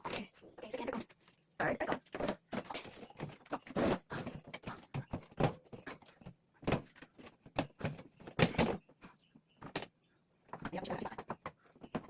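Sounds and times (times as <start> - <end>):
filters knocking and clattering: 1.6 - 8.8.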